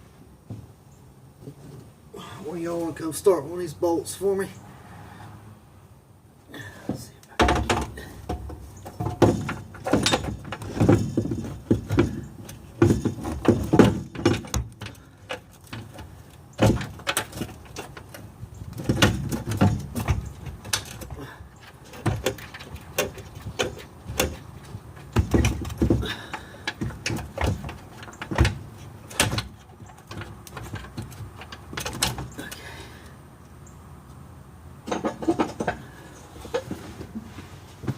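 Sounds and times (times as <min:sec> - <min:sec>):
metallic clunks and scrapes: 0:06.9 - 0:32.6, 0:34.8 - 0:37.9.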